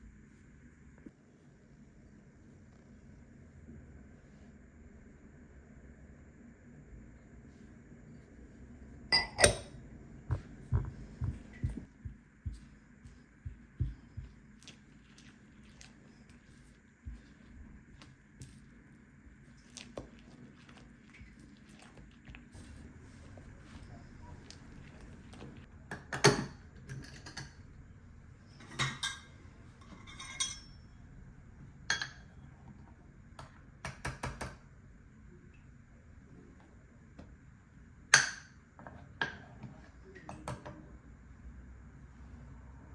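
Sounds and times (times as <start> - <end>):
faint steady hum: 0.0 - 42.9
dishes and utensils clinking: 9.2 - 9.8, 28.6 - 30.8
soft dull thumps: 10.3 - 14.6.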